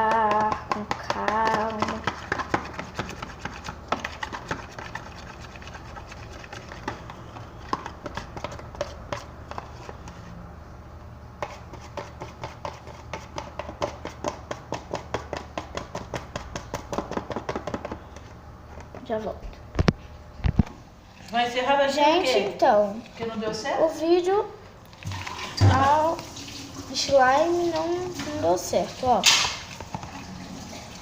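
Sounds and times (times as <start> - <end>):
utensil tapping container sides: 0.0 - 4.6
stirring runny liquid: 0.0 - 10.2, 24.9 - 31.0.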